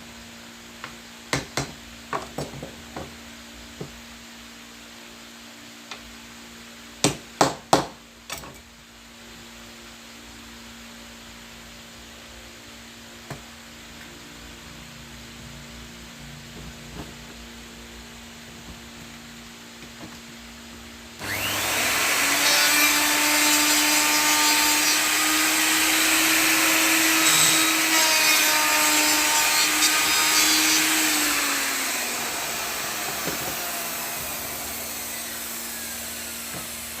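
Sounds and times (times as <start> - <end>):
electric wood router whining: 21.2 - 37.0.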